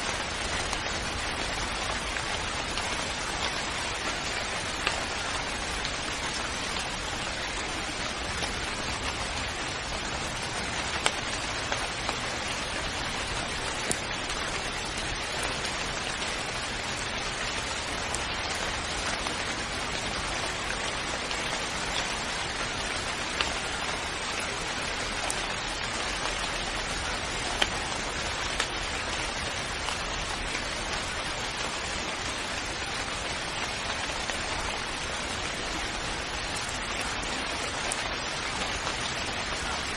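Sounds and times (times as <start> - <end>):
steady rainfall: 0.0 - 39.9
single raindrops striking close: 25.2 - 32.8.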